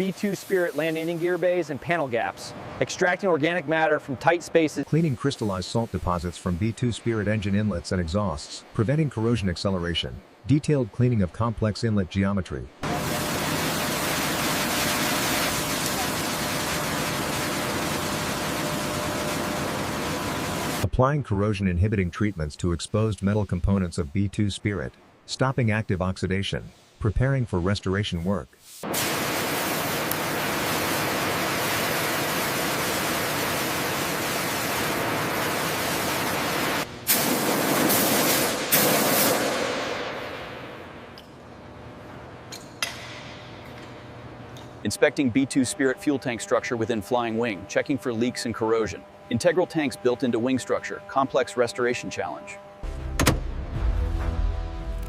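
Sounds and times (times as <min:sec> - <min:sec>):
hissing spray: 0:00.0 - 0:01.9, 0:12.8 - 0:20.8, 0:28.6 - 0:40.2
steady rushing hiss: 0:00.0 - 0:11.1, 0:21.8 - 0:40.9.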